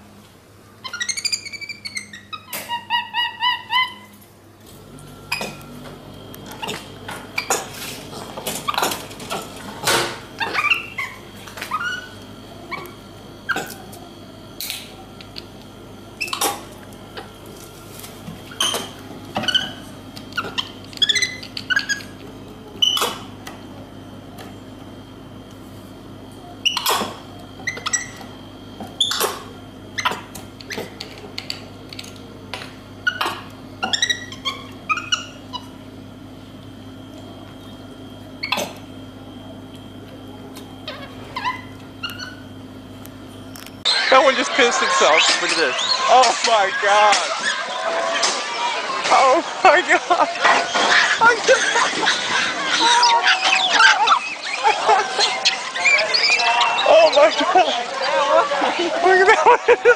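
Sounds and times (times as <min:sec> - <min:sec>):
squeaky animal calls: 0:00.8 - 0:04.2, 0:10.4 - 0:13.8, 0:18.5 - 0:22.2, 0:26.6 - 0:28.2, 0:33.0 - 0:35.8, 0:40.8 - 0:42.4, 0:43.9 - 0:48.8, 0:50.4 - 0:58.2.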